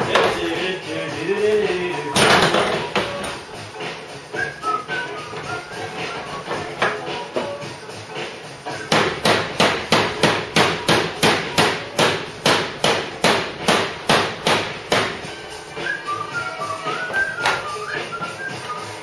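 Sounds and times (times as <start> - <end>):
faint radio music: 0.0 - 19.0
hammer striking sheet steel: 8.9 - 15.3.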